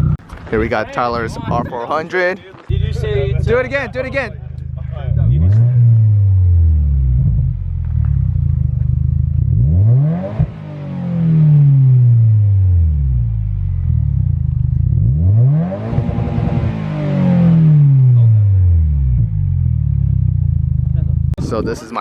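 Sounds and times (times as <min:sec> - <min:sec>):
car engine idling and revving: 0:00.0 - 0:00.7, 0:02.6 - 0:21.4
exhaust pop: 0:02.5 - 0:21.4.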